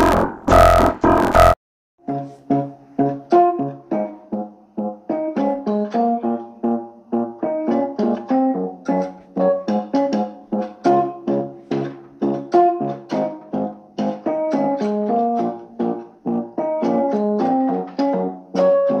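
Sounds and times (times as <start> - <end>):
phone ringtone melody: 0.5 - 1.6.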